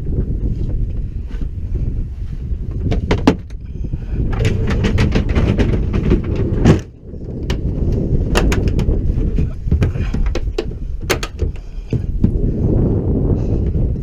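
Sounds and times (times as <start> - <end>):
low rumble: 0.0 - 14.0
sharp knocks and clatters: 2.7 - 3.6, 4.3 - 7.7, 8.3 - 12.4.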